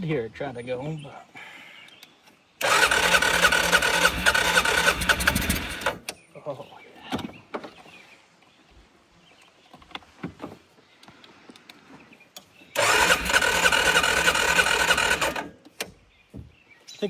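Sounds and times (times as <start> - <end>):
engine cranking with electric starter: 2.6 - 6.2, 12.7 - 16.0.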